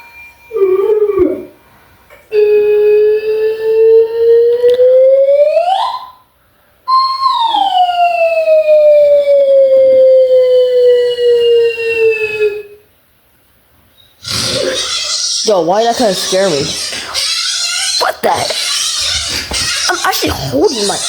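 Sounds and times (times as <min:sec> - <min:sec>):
siren-like wail through speaker: 0:00.5 - 0:01.6, 0:02.3 - 0:06.2, 0:06.9 - 0:12.8.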